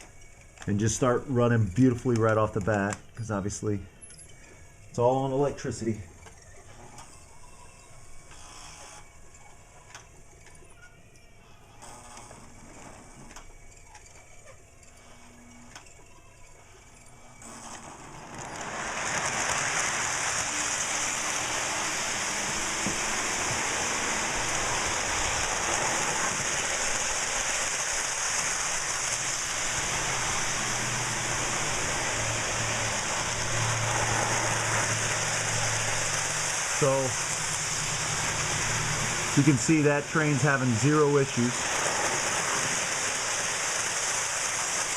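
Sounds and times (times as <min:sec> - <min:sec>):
model train rolling rattle: 0:16.8 - 0:44.9.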